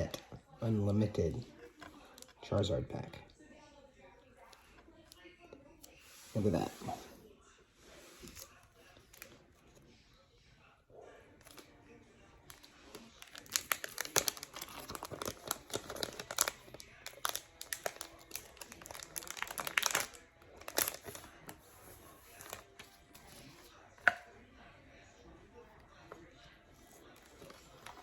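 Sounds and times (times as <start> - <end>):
packaging crinkling and tearing: 12.5 - 21.6, 22.2 - 22.9.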